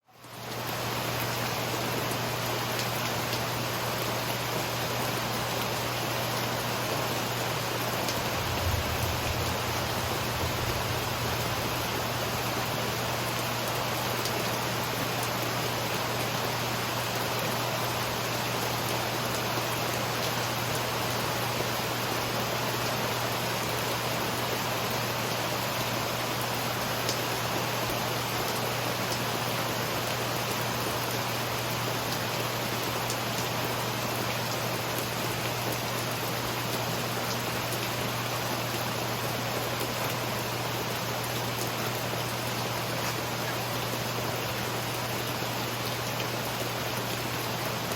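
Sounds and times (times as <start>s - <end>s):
steady rain falling: 0.0s - 47.9s
brief low rumble: 8.2s - 12.5s.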